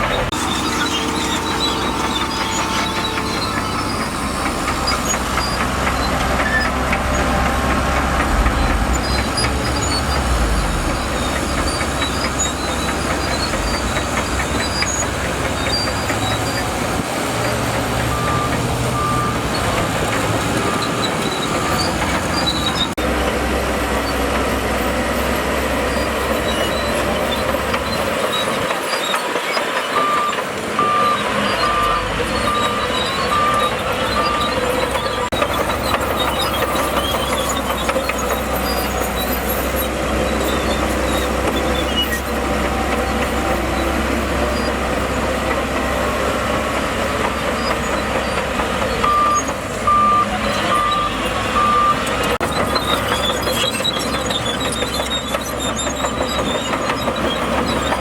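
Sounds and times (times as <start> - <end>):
diesel engine under load: 0.0 - 58.0
steel tracks clattering: 0.0 - 58.0
reversing alarm beeps: 18.0 - 22.0, 29.9 - 35.1, 49.0 - 52.1.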